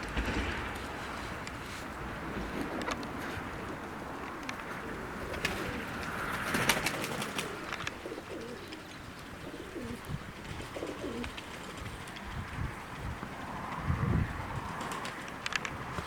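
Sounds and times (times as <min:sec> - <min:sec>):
pigeons cooing: 0:02.4 - 0:12.3
sharp clicks: 0:15.0 - 0:16.0.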